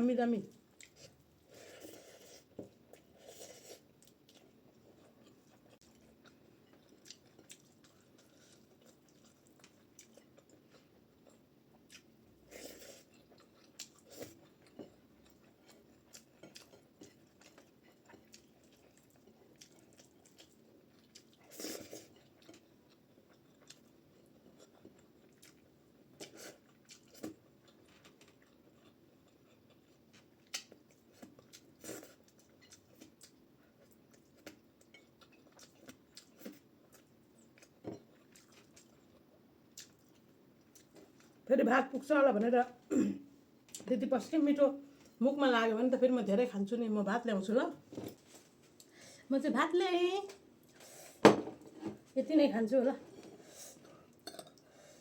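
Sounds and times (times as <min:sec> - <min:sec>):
person chewing food: 0:00.7 - 0:41.4.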